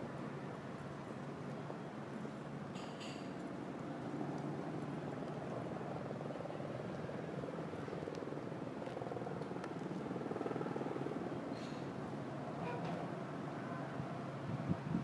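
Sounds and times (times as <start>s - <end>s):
helicopter rotor chopping: 5.6s - 11.5s.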